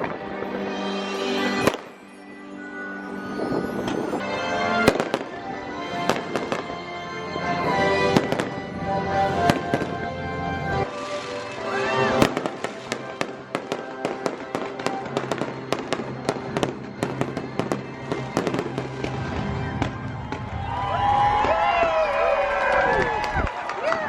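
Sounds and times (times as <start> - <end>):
music playing: 0.0 - 22.5
fireworks bangs: 1.6 - 2.1, 4.8 - 6.8, 8.0 - 10.1, 10.7 - 21.9.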